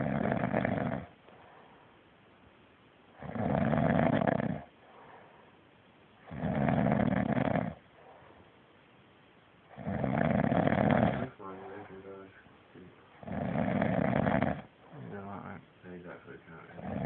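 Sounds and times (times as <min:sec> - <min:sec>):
loud rasping snores: 0:00.0 - 0:01.2, 0:03.2 - 0:04.7, 0:06.2 - 0:07.8, 0:09.7 - 0:12.0, 0:13.2 - 0:15.2, 0:16.7 - 0:17.0
quiet breathing: 0:00.0 - 0:02.2, 0:04.1 - 0:09.0, 0:09.6 - 0:17.0.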